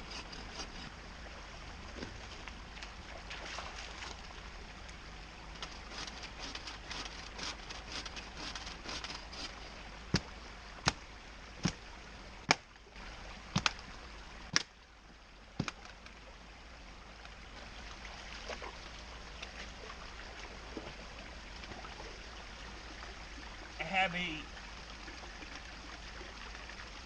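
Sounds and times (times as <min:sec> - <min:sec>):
creek running: 0:00.0 - 0:27.0.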